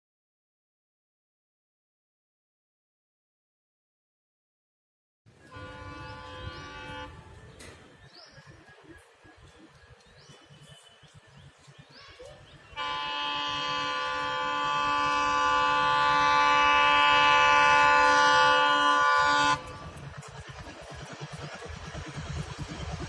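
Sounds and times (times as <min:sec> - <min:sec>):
train horn long blast: 0:05.4 - 0:07.8, 0:12.7 - 0:20.0.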